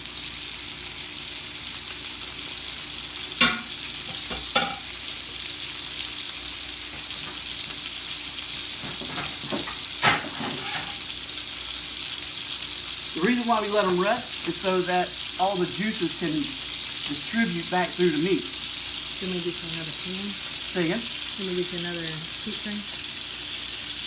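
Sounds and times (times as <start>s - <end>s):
steaks sizzling in a skillet: 0.0s - 24.0s
utensil knocking against pan: 3.4s - 4.9s.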